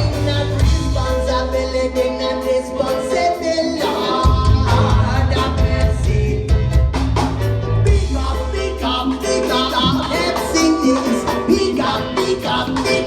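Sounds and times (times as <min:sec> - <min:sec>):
voices singing in harmony: 0:00.0 - 0:07.1, 0:07.9 - 0:13.0
reggae band playing: 0:00.0 - 0:13.0.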